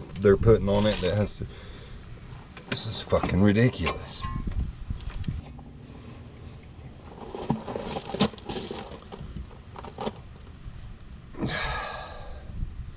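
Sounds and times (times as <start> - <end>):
metal parts clinking and scraping: 0.7 - 1.2, 7.0 - 10.6.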